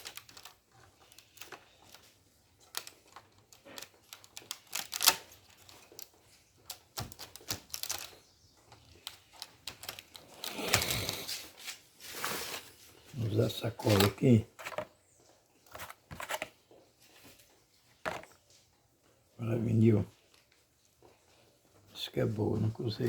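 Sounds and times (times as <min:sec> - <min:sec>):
small parts clicking and tapping: 0:00.0 - 0:11.0
rustling scrape: 0:10.2 - 0:13.2, 0:15.7 - 0:16.5.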